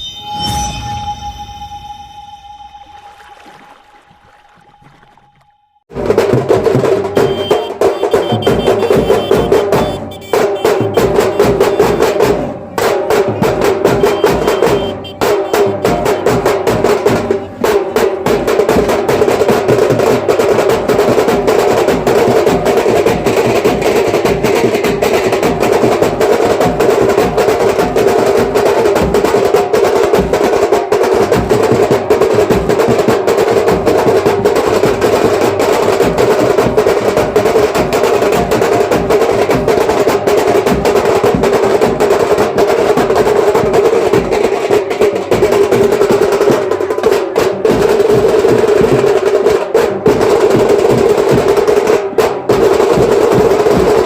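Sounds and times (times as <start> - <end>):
held melody note: 0.0 - 5.9, 7.1 - 12.2, 13.9 - 16.4
fast hand drumming: 5.9 - 54.0.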